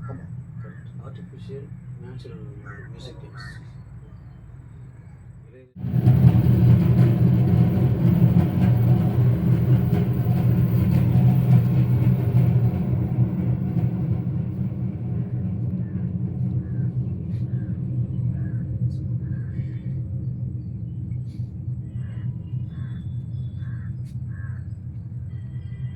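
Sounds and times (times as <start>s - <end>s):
thunder percussion rumble: 5.8s - 22.7s.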